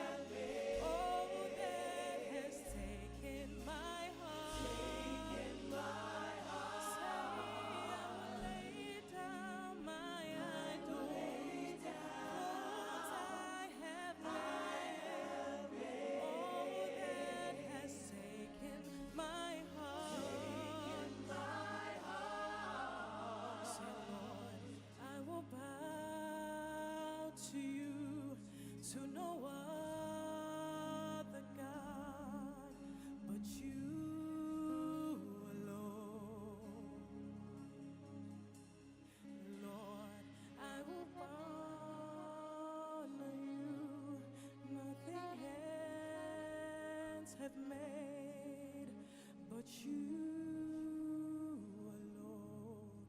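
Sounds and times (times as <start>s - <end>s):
sustained low accompaniment: 0.0s - 12.0s
group singing gospel: 0.0s - 25.9s.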